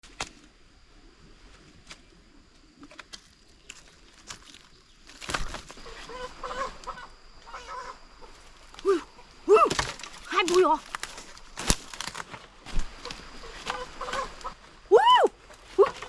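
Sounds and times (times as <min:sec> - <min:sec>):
chicken clucking and squawking: 0:05.8 - 0:08.4, 0:13.4 - 0:14.6
wings flapping: 0:09.6 - 0:14.8.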